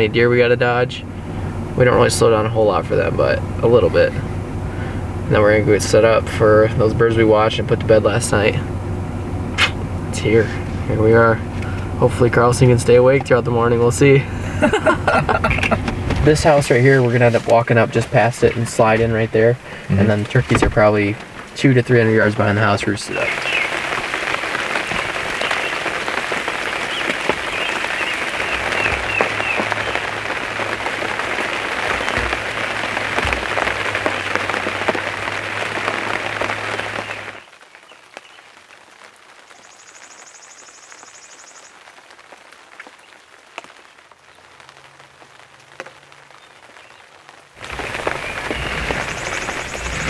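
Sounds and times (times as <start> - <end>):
heavy rain falling: 0.0 - 50.0
faint hiss: 9.6 - 37.4, 47.6 - 50.0.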